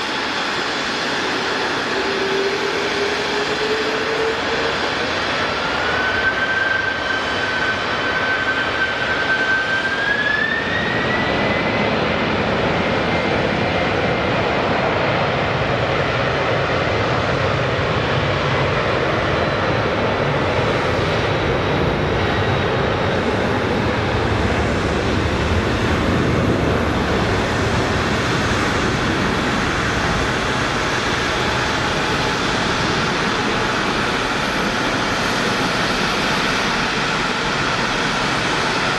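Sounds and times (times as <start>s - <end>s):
jet engines running: 0.0s - 38.9s.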